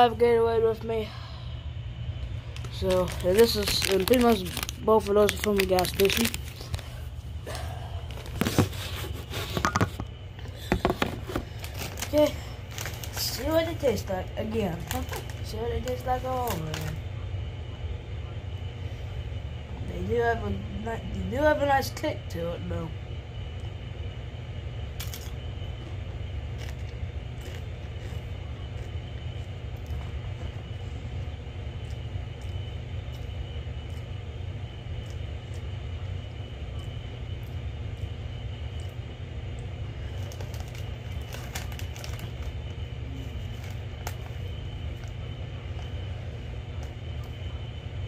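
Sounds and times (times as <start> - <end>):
tortilla chips crunching: 2.4 - 7.1, 24.9 - 47.4.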